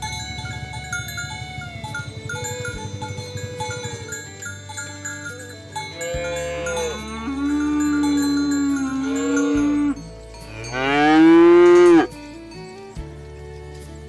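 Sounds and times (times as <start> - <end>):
short bell-like tones: 0.0 - 12.8
cattle mooing: 5.9 - 12.2.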